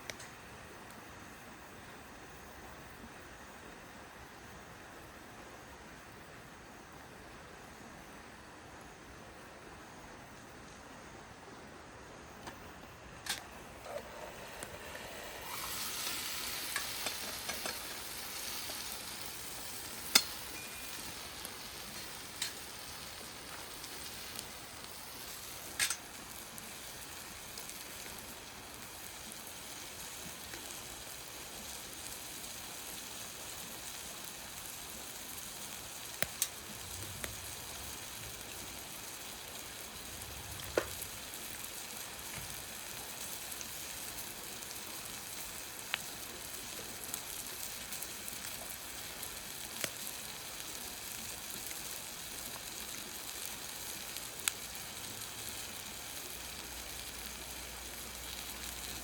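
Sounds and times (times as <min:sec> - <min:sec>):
rice sizzling in a frying pan: 0:00.0 - 0:59.0
utensil clicking against pan: 0:20.1 - 0:20.4, 0:22.0 - 0:22.6, 0:25.8 - 0:26.0.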